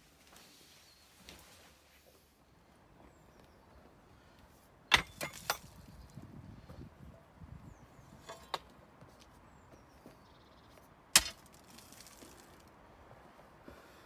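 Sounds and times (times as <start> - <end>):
soft rustling: 0.0 - 2.3.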